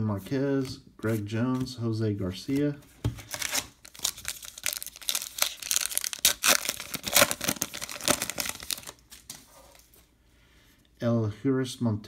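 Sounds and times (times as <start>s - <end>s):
wrapper tearing and crinkling: 3.3s - 9.3s.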